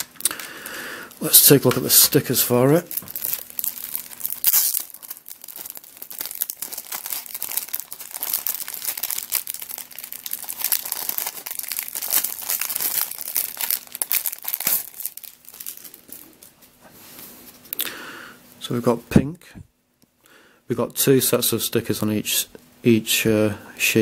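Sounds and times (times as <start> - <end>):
plastic packaging crinkling: 0.0 - 16.8.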